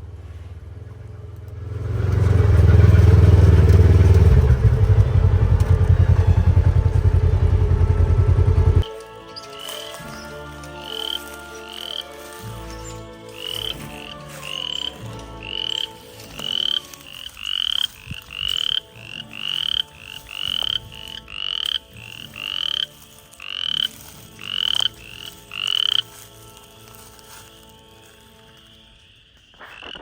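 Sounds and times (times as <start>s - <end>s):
frogs peeping: 9.5s - 30.0s
distant frogs droning: 10.4s - 12.3s, 13.0s - 30.0s.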